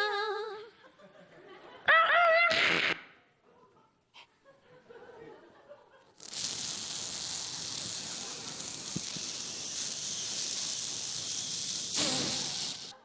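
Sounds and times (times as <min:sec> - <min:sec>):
person hissing with mouth: 0:02.5 - 0:03.1, 0:06.2 - 0:13.0.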